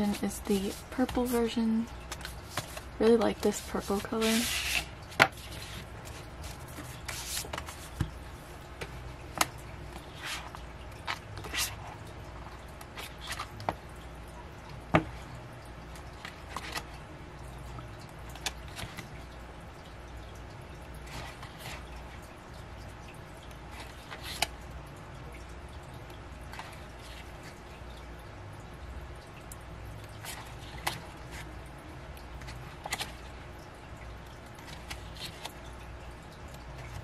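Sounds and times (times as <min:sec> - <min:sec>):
paper and card rustling: 0:00.0 - 0:08.1
low steady hum: 0:00.0 - 0:37.0.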